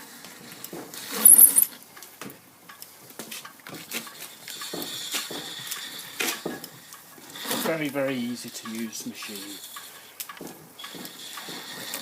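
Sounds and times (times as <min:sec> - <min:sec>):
thin high ring: 0:01.2 - 0:01.8
lathe tool clicking and scraping: 0:03.9 - 0:12.0.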